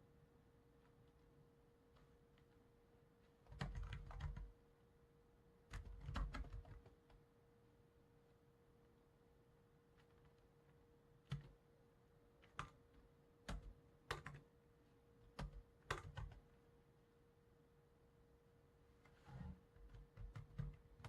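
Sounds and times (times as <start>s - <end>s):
faint steady hum: 0.0s - 21.0s
keyboard and mouse clicks: 11.2s - 11.6s, 12.4s - 14.4s, 15.3s - 16.4s, 19.8s - 21.0s.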